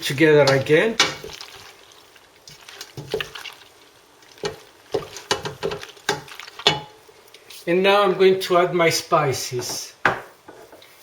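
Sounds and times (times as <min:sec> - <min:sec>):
wet squelching of pasta: 0:00.0 - 0:07.6
utensil scraping a pan: 0:00.4 - 0:07.0.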